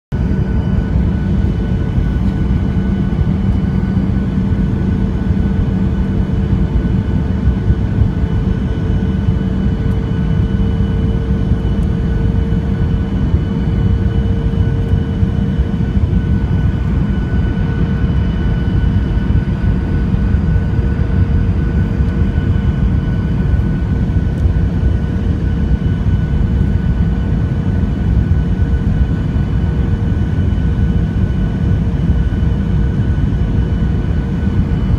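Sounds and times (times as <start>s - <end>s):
airliner cabin engine rush: 0.1s - 34.9s
turbofan engine whine: 0.1s - 34.9s.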